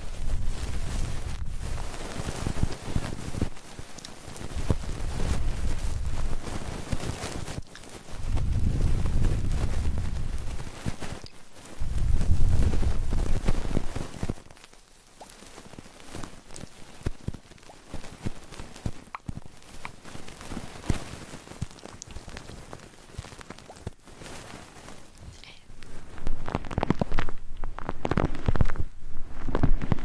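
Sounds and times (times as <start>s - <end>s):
low rustling rumble: 0.0s - 3.6s, 4.5s - 7.0s, 8.2s - 10.9s, 11.8s - 14.2s
soft clicks and crackles: 0.0s - 30.0s.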